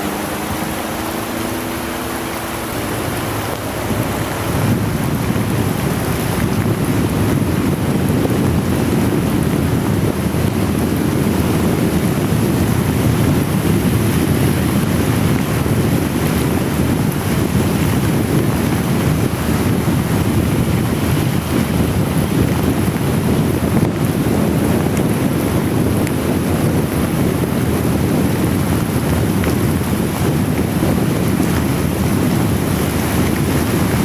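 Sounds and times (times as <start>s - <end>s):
rain hissing: 0.0s - 34.0s
wind buffeting microphone: 0.0s - 34.0s.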